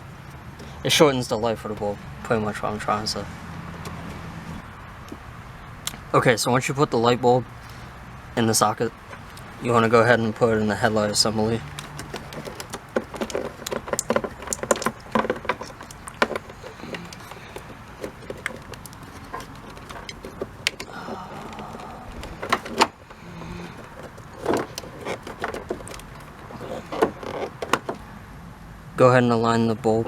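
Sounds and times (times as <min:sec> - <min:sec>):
plastic socket clicking and rattling: 0:11.2 - 0:28.1.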